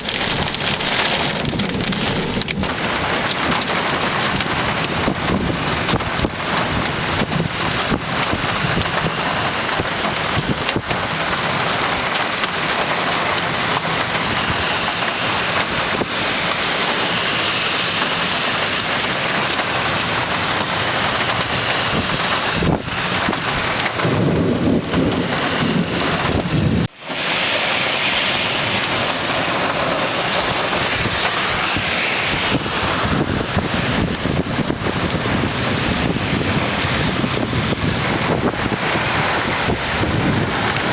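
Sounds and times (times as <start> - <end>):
low rumble: 0.0 - 4.4, 24.0 - 26.9
heavy rain falling: 0.0 - 40.9.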